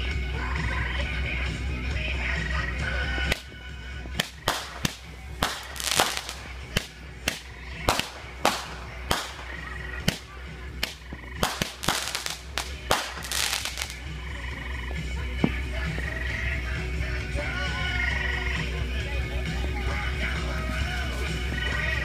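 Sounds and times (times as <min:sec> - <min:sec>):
fireworks cracking and popping: 0:03.2 - 0:14.2.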